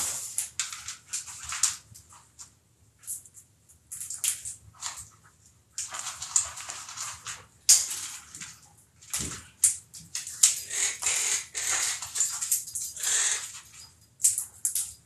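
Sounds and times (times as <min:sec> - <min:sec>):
parrots squawking and chattering: 0:10.5 - 0:12.4, 0:13.0 - 0:13.6.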